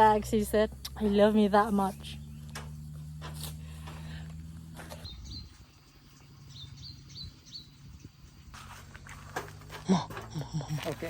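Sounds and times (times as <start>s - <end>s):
small bird chirping: 0.0s - 8.8s
steady low hum: 0.0s - 11.0s.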